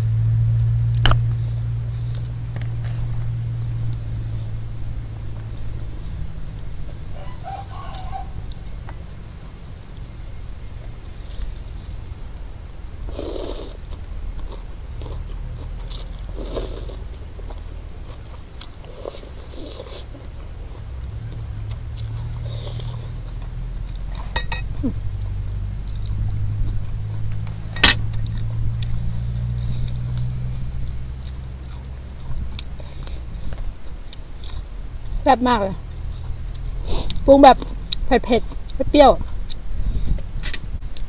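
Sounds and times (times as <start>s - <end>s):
person chewing: 13.1s - 20.9s, 21.7s - 30.4s, 31.2s - 35.2s, 35.8s - 40.2s.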